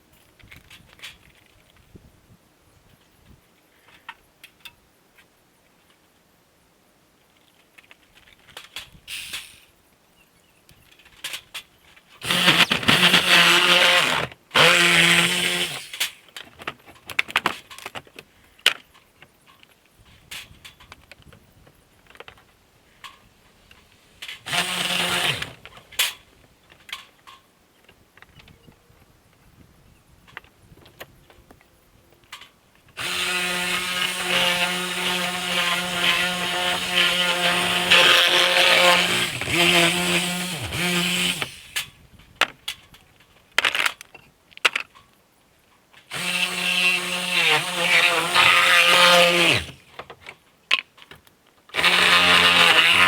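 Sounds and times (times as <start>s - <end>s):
power saw cutting wood: 12.2s - 16.2s, 24.2s - 25.7s, 33.0s - 41.8s, 46.1s - 49.8s, 51.7s - 53.0s.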